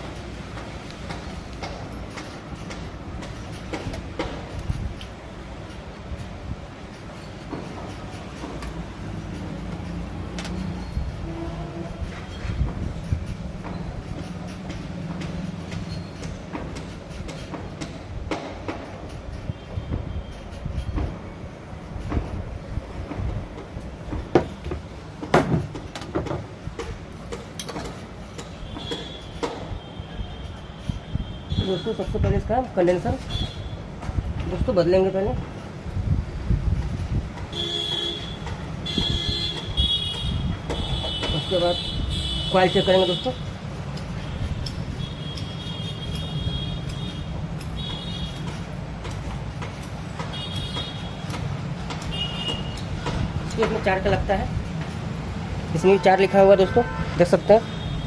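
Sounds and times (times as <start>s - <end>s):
fan parts clicking and knocking: 0.0s - 58.0s
short high-pitched squeaks: 10.5s - 12.6s, 15.4s - 16.3s.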